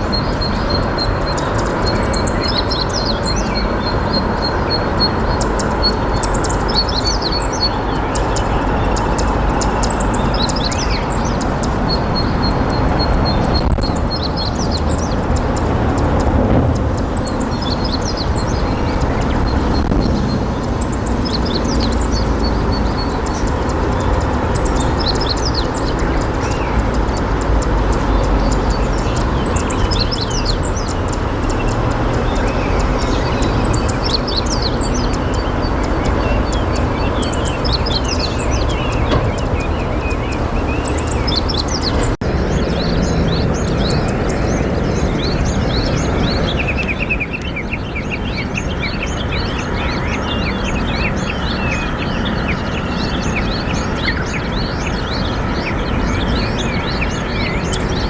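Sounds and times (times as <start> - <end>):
river water flowing: 0.0 - 58.0
small birds chirping: 0.0 - 58.0.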